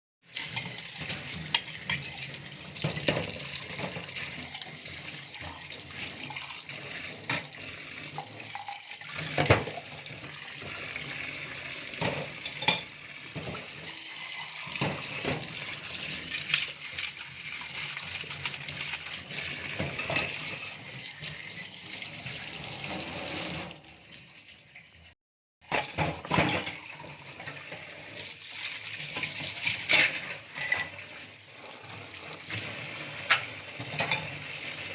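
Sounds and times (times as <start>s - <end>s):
running water: 0.3s - 25.2s
dishes clinking: 12.0s - 13.6s, 19.8s - 20.9s, 25.7s - 27.5s, 29.2s - 31.1s, 33.2s - 34.5s.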